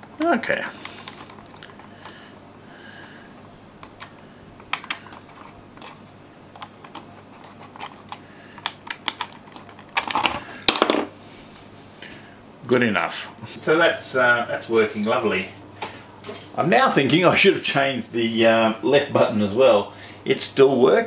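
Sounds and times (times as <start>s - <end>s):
computer mouse clicking: 3.8s - 10.1s.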